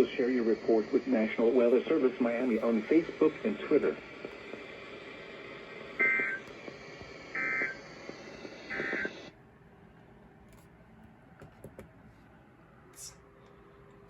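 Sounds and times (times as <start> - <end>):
broadcast hiss: 0.0 - 9.4
digital data tone bursts: 7.3 - 9.3.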